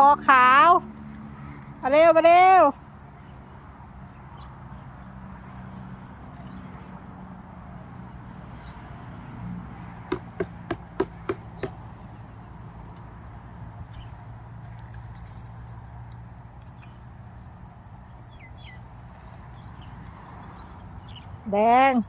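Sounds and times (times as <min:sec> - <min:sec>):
insects chirring: 0:00.6 - 0:21.5
sharp knocks: 0:10.1 - 0:11.8.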